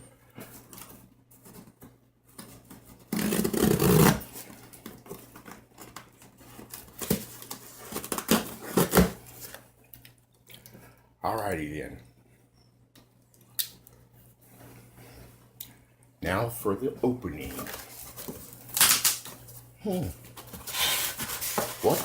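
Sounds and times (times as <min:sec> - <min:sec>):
loud scrape on cardboard: 0:20.6 - 0:22.0.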